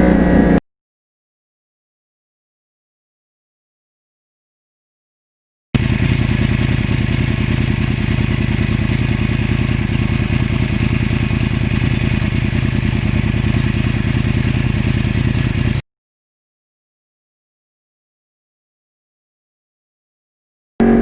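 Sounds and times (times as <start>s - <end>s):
motorcycle engine running: 0.0s - 0.6s, 5.8s - 15.8s, 20.8s - 21.0s.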